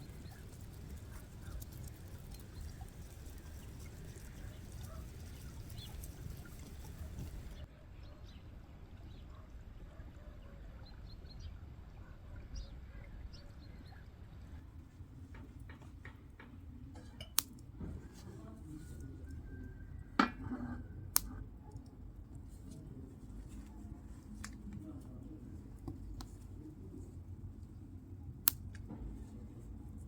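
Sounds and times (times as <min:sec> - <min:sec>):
low steady background noise: 0:00.0 - 0:30.0
small clicks and knocks: 0:15.2 - 0:17.9.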